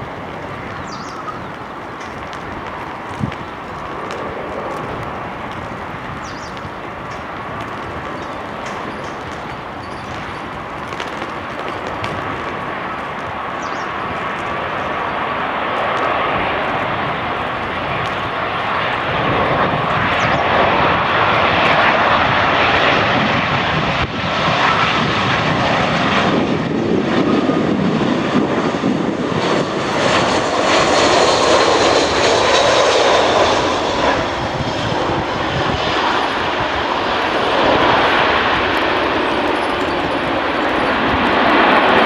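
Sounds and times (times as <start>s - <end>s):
jet engines roaring: 0.0s - 42.0s
thin engine whine: 29.6s - 42.0s.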